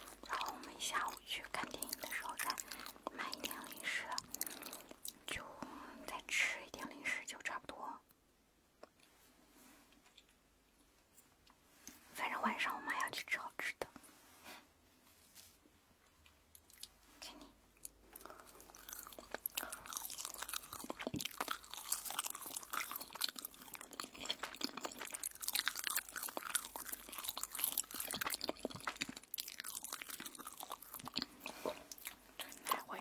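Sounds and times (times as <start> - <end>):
crunchy chewing of toast: 0.0 - 5.3, 17.8 - 33.0.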